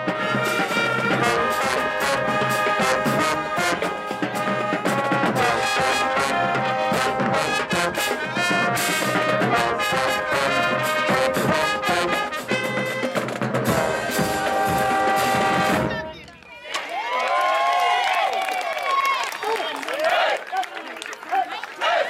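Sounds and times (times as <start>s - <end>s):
brass section holding notes: 0.0s - 16.3s
steady drum beat: 0.0s - 16.3s.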